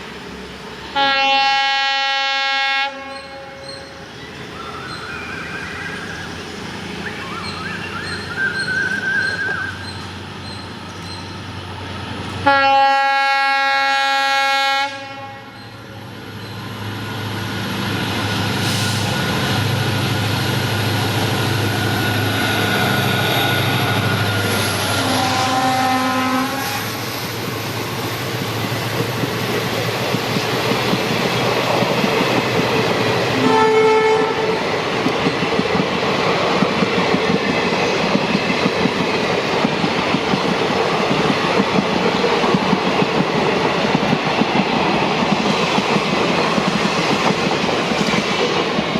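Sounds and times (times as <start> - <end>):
diesel locomotive engine drone: 0.0 - 48.9
locomotive horn: 1.0 - 3.6, 12.4 - 15.6, 24.8 - 26.9, 33.3 - 34.7.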